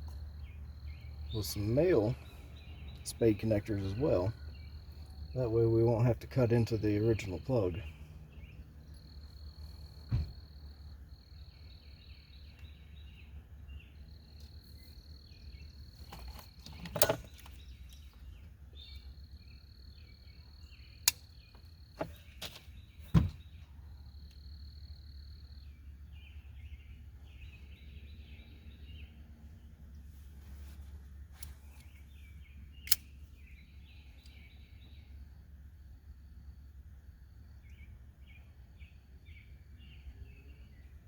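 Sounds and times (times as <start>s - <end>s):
insects chirping and trilling: 0.0s - 29.2s.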